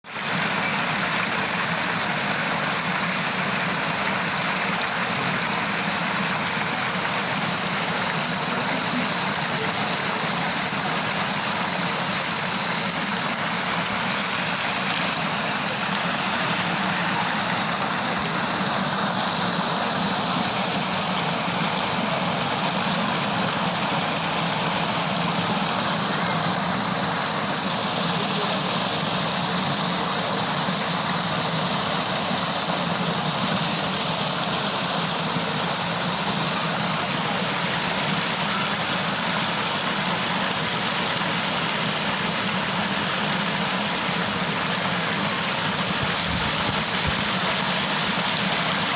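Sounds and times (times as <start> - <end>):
water gurgling over rocks: 0.0 - 48.9.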